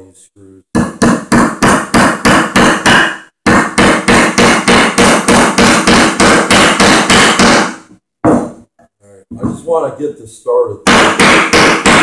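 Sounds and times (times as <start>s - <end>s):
hammer driving nail into wood: 0.8s - 8.6s, 10.8s - 12.0s.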